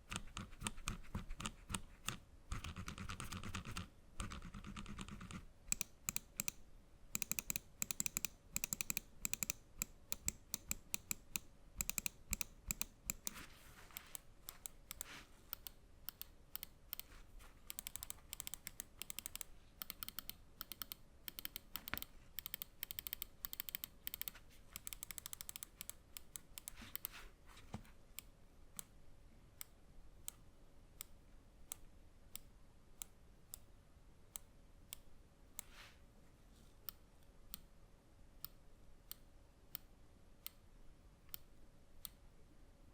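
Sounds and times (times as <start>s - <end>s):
mouse clicking: 0.1s - 17.1s, 17.7s - 27.2s.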